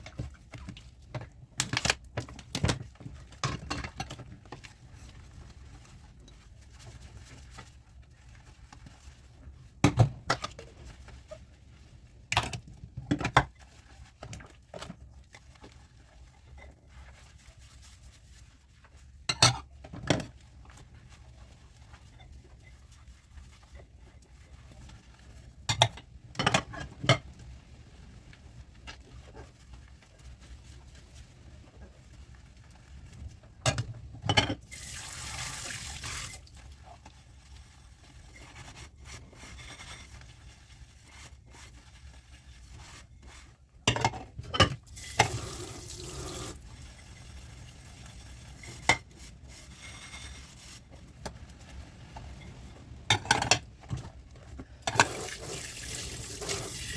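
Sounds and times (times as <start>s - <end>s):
tap running: 45.0s - 46.6s.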